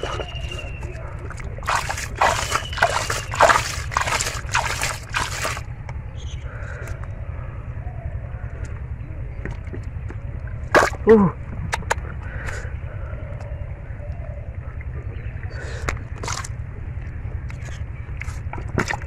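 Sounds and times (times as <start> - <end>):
water splashing and sloshing: 0.0 - 5.7, 9.5 - 11.2, 16.0 - 19.0.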